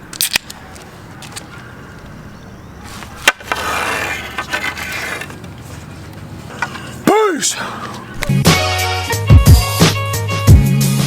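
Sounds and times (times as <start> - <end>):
hockey stick slap shot crack: 2.9 - 5.6.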